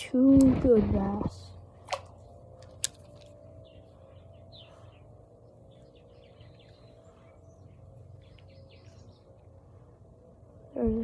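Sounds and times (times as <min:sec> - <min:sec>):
low background hum: 0:00.0 - 0:11.0
small birds chirping: 0:02.1 - 0:10.0.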